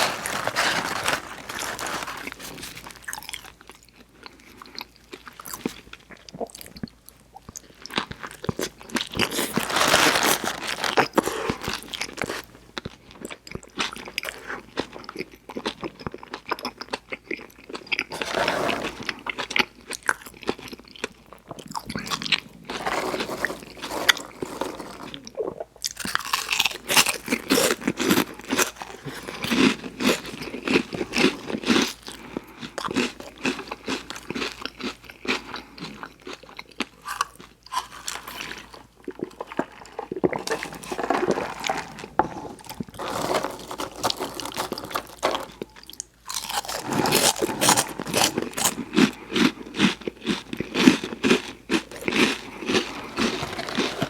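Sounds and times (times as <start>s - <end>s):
crunching and chewing food: 0.0s - 54.0s.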